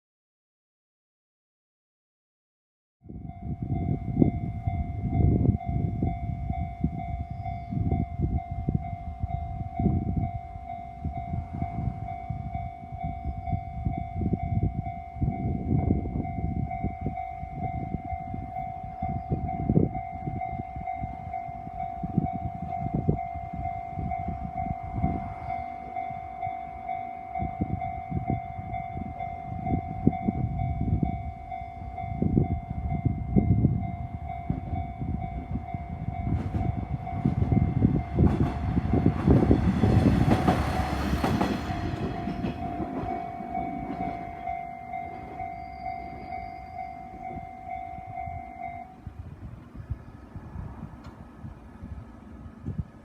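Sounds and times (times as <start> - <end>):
level crossing alarm ringing: 3.4 - 41.0, 41.6 - 49.1.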